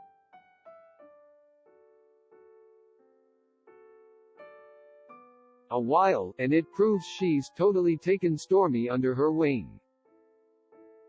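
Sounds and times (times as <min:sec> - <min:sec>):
soft piano music: 0:00.0 - 0:11.0.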